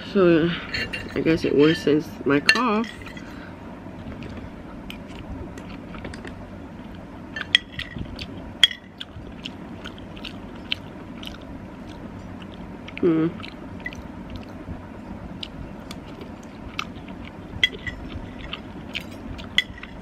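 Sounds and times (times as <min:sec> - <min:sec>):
person chewing food: 0:04.0 - 0:20.0.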